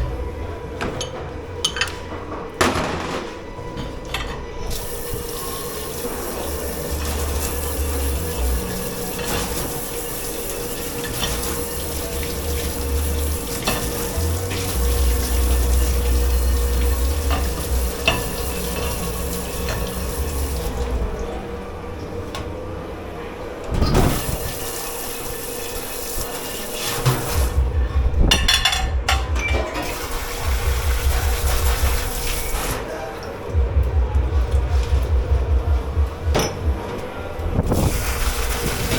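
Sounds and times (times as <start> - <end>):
steady hum: 0.0 - 38.9
dishes clinking: 0.8 - 20.8, 28.3 - 30.1, 36.3 - 37.0
water running into a sink: 4.7 - 21.5, 23.8 - 35.6, 37.7 - 38.9.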